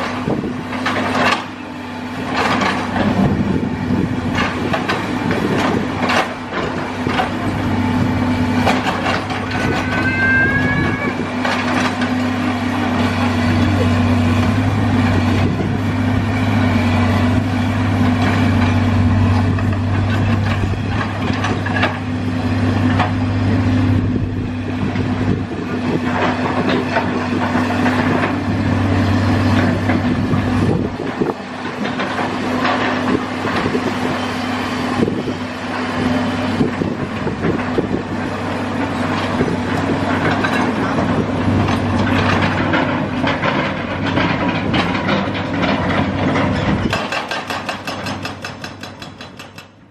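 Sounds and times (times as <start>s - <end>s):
diesel engine running: 0.0s - 49.9s
hydraulic breaker hammering concrete: 2.2s - 16.6s, 34.9s - 49.9s.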